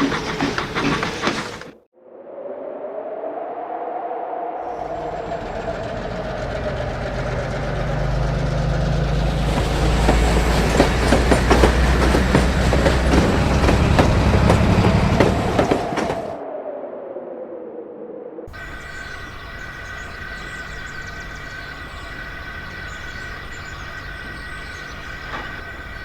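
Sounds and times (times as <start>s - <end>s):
diesel locomotive engine drone: 0.0s - 1.8s, 4.8s - 16.4s, 18.5s - 26.0s
wheels clicking over rail joints: 0.0s - 1.8s, 4.8s - 16.4s, 18.6s - 26.0s.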